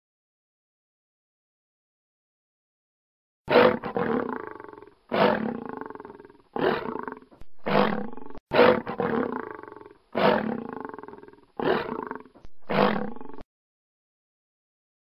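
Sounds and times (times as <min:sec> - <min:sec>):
lion growling: 0:03.5 - 0:13.4.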